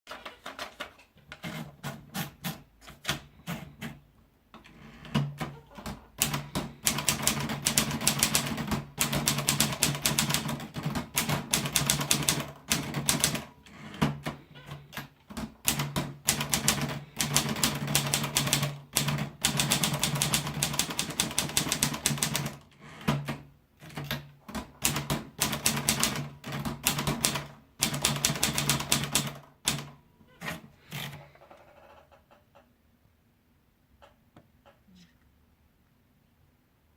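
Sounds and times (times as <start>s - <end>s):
typewriter keystrokes clacking: 5.2s - 31.1s.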